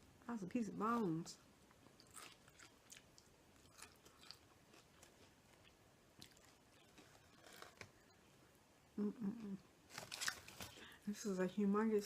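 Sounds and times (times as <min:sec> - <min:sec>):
chewing fried chicken: 0:01.7 - 0:07.9.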